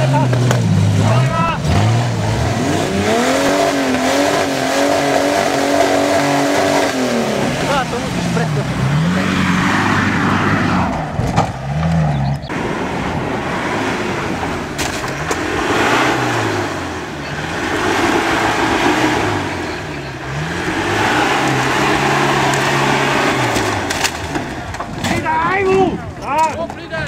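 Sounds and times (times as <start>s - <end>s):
off-road vehicle engine revving: 0.0s - 27.0s
knocks and clatters: 10.9s - 12.1s, 14.8s - 15.6s, 23.4s - 26.9s.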